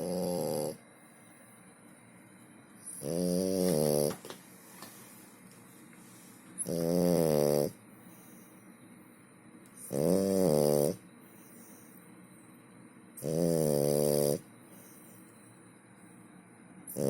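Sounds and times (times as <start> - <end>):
dog snoring: 0.0 - 0.8, 2.8 - 4.3, 6.6 - 7.8, 9.8 - 11.9, 13.2 - 14.5.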